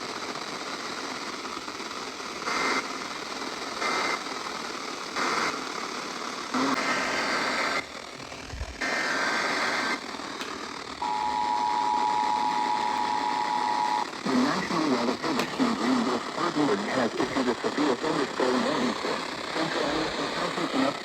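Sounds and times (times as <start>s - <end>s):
radio static: 0.0s - 5.8s, 6.4s - 21.0s
two-tone attention signal: 11.0s - 14.1s.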